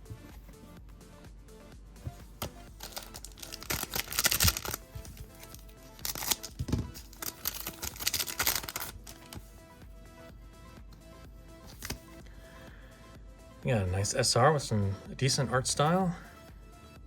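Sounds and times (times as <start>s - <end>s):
quiet background music: 0.0s - 17.0s
plastic crinkling and rustling: 2.4s - 9.4s.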